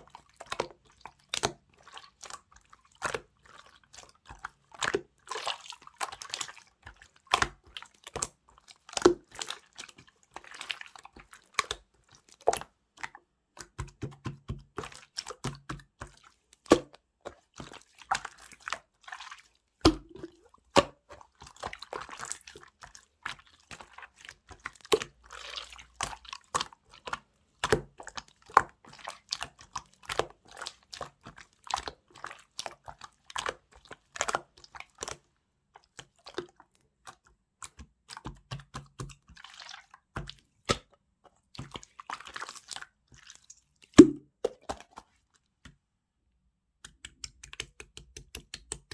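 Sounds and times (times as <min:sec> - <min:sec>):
slime squishing and popping: 0:44.0 - 0:44.3.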